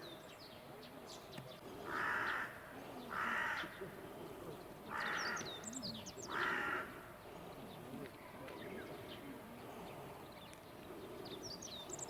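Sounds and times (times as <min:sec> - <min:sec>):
small birds chirping: 0:00.0 - 0:12.0
crow cawing: 0:01.8 - 0:03.9, 0:04.9 - 0:05.6, 0:06.3 - 0:07.1.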